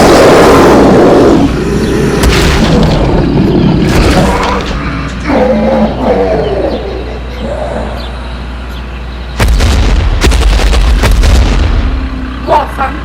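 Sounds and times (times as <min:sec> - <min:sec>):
deep boom: 0:02.2 - 0:04.7, 0:09.4 - 0:12.2
crackle of sharp cracks: 0:02.2 - 0:05.2, 0:09.4 - 0:12.0.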